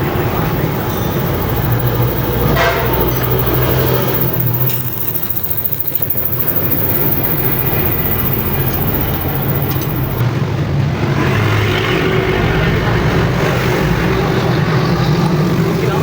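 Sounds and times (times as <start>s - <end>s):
motorcycle engine running: 0.0s - 10.2s.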